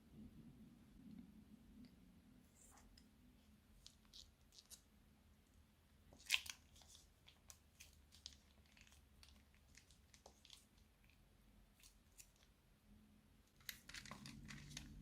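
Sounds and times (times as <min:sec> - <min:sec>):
slime and plastic bags crackling: 0:06.1 - 0:12.5, 0:13.5 - 0:15.0.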